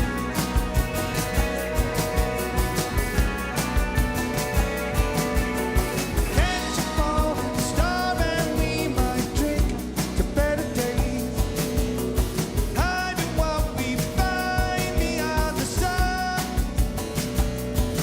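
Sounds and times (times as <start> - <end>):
drums steady beat: 0.0 - 18.0
rock band playing live: 0.0 - 18.0
sliding lead guitar line: 0.0 - 18.0.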